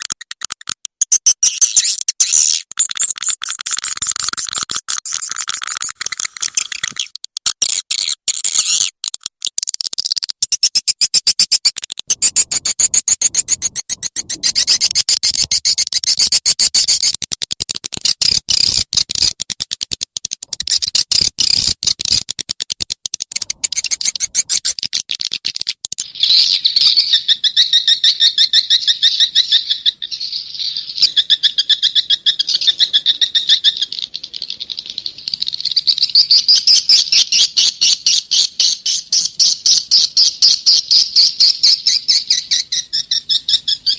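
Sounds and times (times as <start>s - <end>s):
swiftlets chirping: 0.0s - 17.2s, 18.0s - 26.2s.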